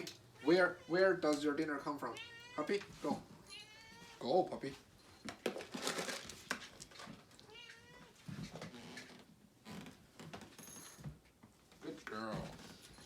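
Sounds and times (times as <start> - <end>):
cat meowing: 0.0 - 1.2, 1.9 - 4.2, 7.4 - 8.3.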